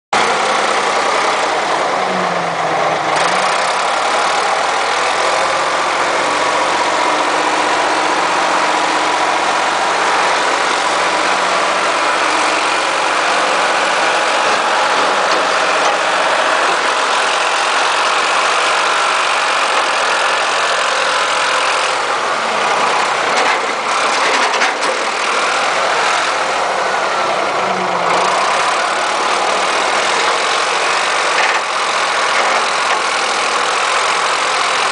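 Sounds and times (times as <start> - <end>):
engine idling: 0.2 - 34.9.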